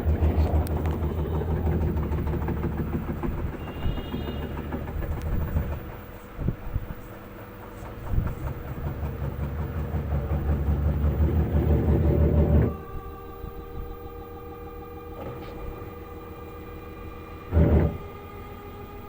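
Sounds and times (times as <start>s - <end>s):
washing machine drum rumbling: 0.0s - 13.3s
steady hum with whining tones: 0.0s - 19.0s.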